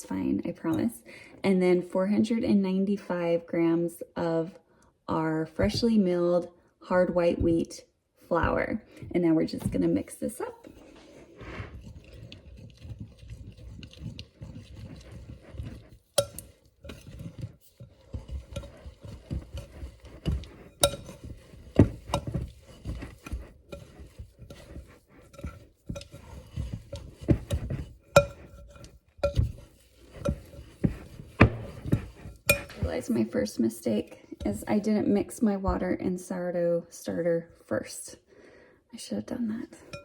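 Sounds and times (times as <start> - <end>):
utensil scraping dough in bowl: 5.6 - 36.2, 39.7 - 40.0
utensil clinking against bowl: 11.7 - 33.3.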